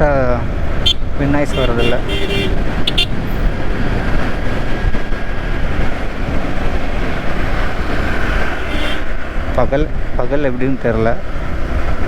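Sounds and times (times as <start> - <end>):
wind and road noise: 0.0 - 12.0
motorcycle engine running: 0.2 - 9.4.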